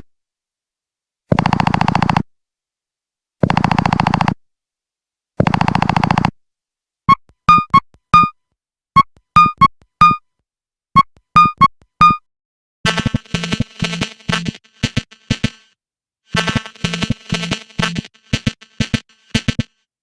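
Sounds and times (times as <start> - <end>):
electronic pattern with drum-machine beats: 7.5 - 8.3, 11.4 - 12.2, 12.9 - 15.7, 16.4 - 19.7.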